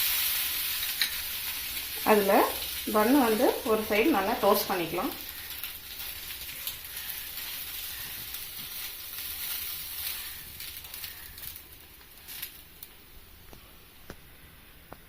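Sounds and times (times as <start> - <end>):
butter sizzling in a pan: 0.0 - 14.0.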